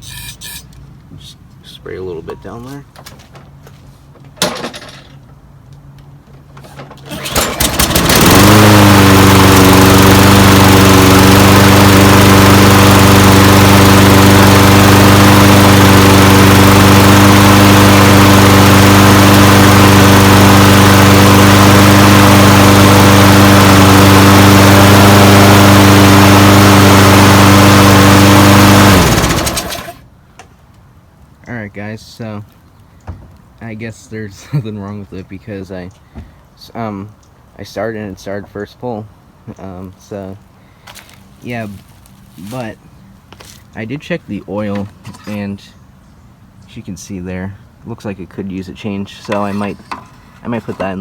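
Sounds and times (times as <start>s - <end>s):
lawn mower engine running: 6.5s - 30.1s.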